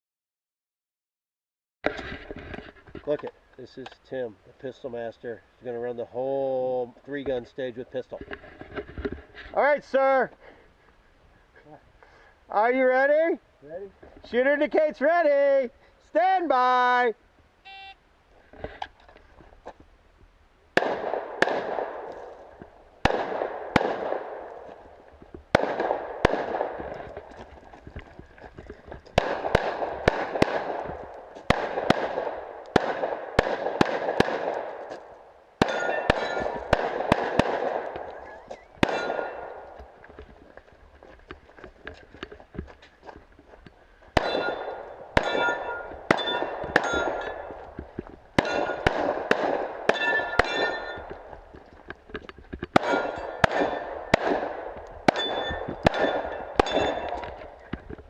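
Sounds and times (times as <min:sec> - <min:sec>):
pistol shots: 0:20.8 - 0:27.1, 0:29.2 - 0:40.0, 0:44.2 - 0:47.7, 0:48.4 - 0:51.4, 0:52.7 - 0:57.7
steel targets clanging: 0:35.6 - 0:36.6, 0:38.8 - 0:39.5, 0:44.2 - 0:47.6, 0:48.4 - 0:48.9, 0:49.9 - 0:51.1, 0:52.8 - 0:53.9, 0:55.1 - 0:57.4.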